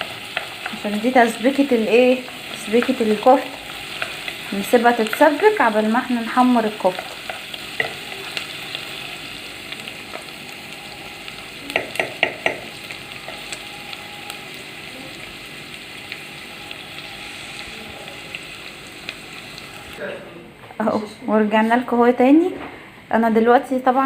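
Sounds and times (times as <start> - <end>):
onion and garlic sizzling: 0.0 - 20.0
spoon knocking against pan: 7.3 - 8.0, 11.7 - 12.8.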